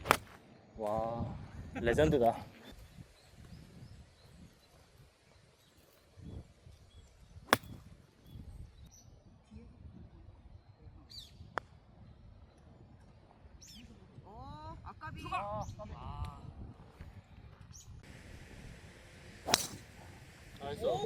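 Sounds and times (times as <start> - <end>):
golf club striking ball: 0.0 - 0.4, 7.5 - 7.8, 19.5 - 20.0
wind on microphone: 1.0 - 4.7, 6.2 - 18.8.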